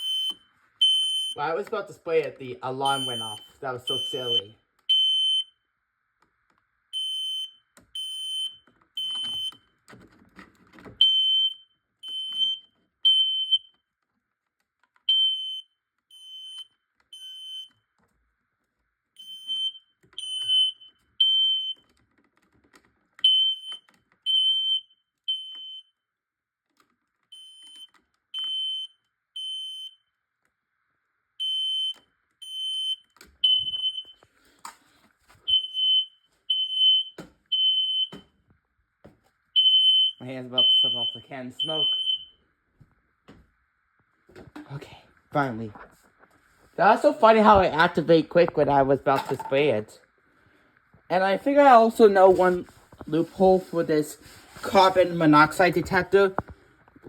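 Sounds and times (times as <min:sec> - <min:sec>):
smoke alarm beeping: 0:00.0 - 0:01.6, 0:02.8 - 0:05.6, 0:07.0 - 0:09.7, 0:11.0 - 0:13.8, 0:15.1 - 0:17.8, 0:19.2 - 0:21.9, 0:23.2 - 0:26.0, 0:27.3 - 0:30.1, 0:31.4 - 0:34.2, 0:35.4 - 0:38.4, 0:39.6 - 0:42.4.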